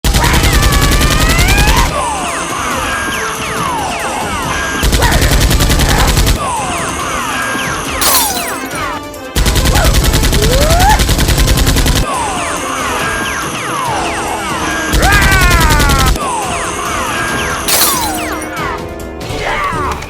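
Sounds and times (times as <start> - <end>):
rapid automatic gunfire: 0.0 - 1.9, 4.8 - 6.4, 9.4 - 12.0.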